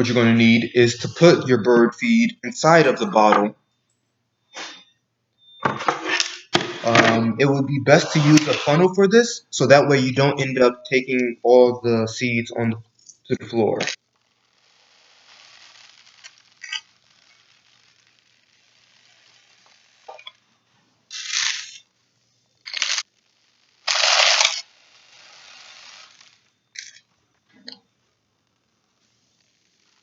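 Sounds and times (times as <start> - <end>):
seed poured into plastic bottle: 23.8 - 24.6.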